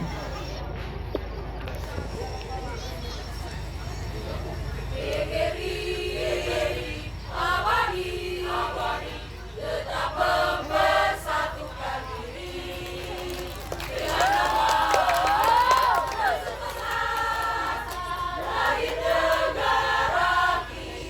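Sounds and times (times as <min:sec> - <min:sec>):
mixed choir singing: 0:04.4 - 0:21.0.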